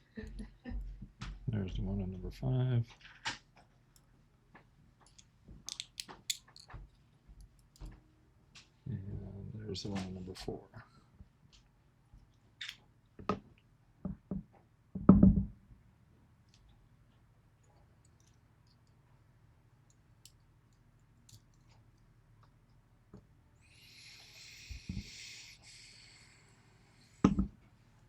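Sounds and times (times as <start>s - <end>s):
lock parts clicking and knocking: 5.1s - 6.8s.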